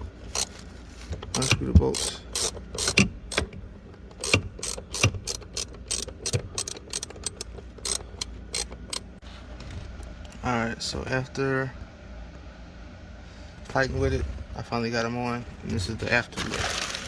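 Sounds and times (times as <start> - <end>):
hand tool metallic clicks and scrapes: 0.3 - 3.5, 4.1 - 9.1.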